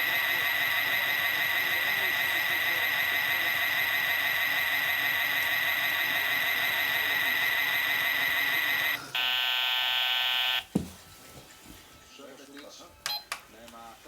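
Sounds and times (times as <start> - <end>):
toy electronic buzzer: 0.0 - 10.7.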